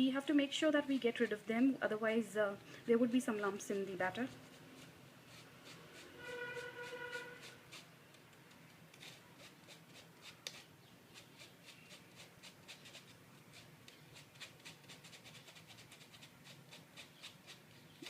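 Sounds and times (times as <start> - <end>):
spoon scraping through wire strainer: 5.4 - 7.8.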